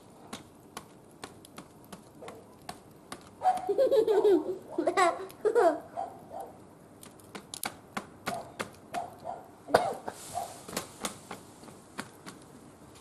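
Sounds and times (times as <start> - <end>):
firewood crackling: 0.0 - 13.0
child's voice: 4.8 - 5.7.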